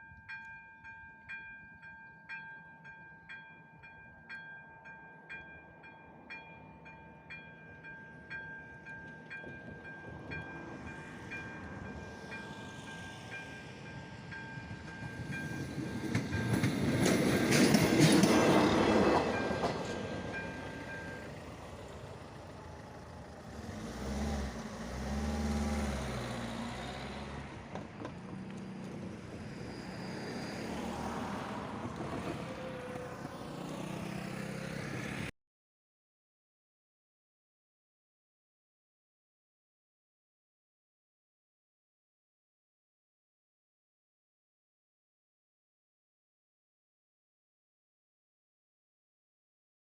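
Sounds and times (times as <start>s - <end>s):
rail vehicle passing: 0.3s - 35.3s
low engine sound: 20.0s - 35.3s.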